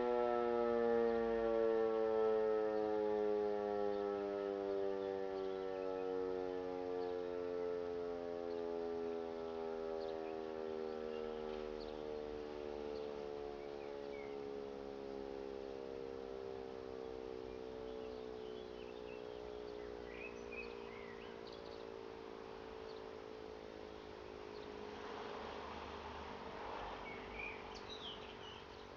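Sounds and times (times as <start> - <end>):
electric motor siren winding down: 0.0 - 24.0.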